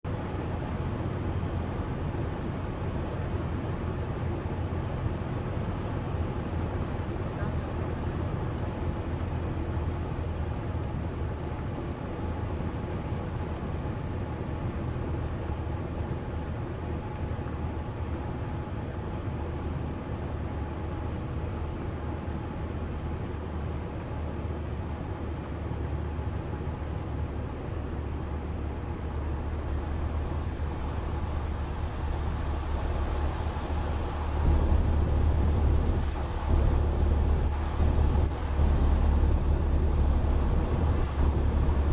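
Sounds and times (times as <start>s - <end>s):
light airplane engine droning: 0.0s - 41.9s
low rumble: 26.7s - 41.9s
airflow noise: 27.6s - 41.9s.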